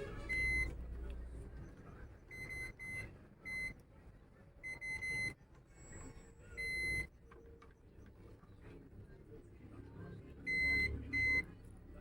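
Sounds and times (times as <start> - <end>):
multimeter continuity beeps: 2.3 - 3.8, 4.6 - 5.4, 6.6 - 7.1, 10.5 - 11.5.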